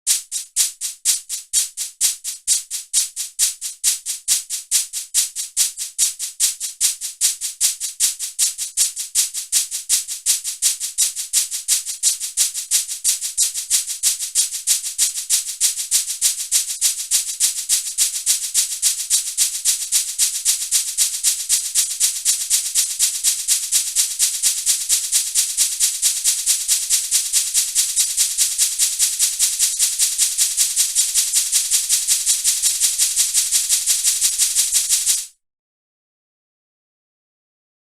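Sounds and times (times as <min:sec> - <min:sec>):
shaker rattle shaken: 0:00.1 - 0:35.4.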